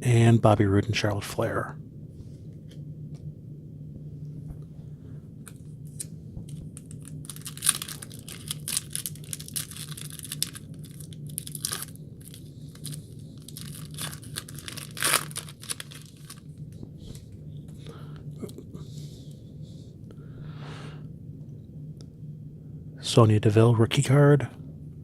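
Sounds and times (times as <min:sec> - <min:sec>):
wrapper crinkling and tearing: 0:05.5 - 0:16.7.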